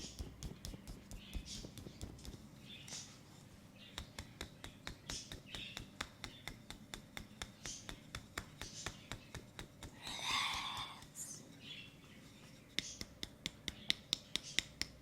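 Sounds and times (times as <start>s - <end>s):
hands slapping on skin: 0.0s - 2.5s, 3.9s - 11.2s, 12.8s - 15.0s.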